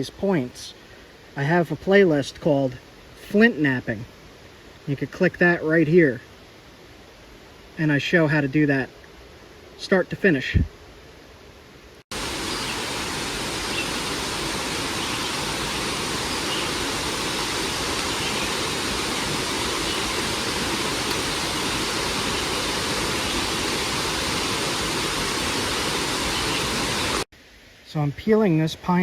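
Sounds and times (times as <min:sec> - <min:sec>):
flowing water rushing: 0:12.1 - 0:27.3.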